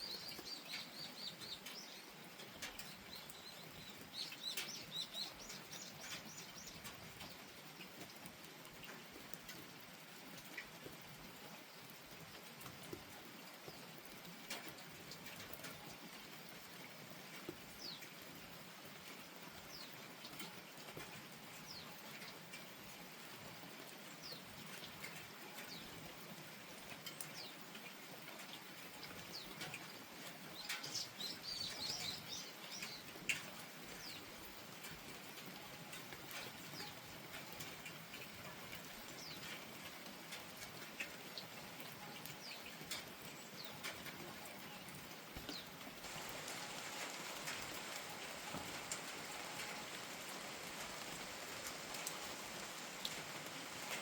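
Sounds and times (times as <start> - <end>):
raindrops pattering: 0.0 - 54.0
steady rain falling: 0.0 - 54.0.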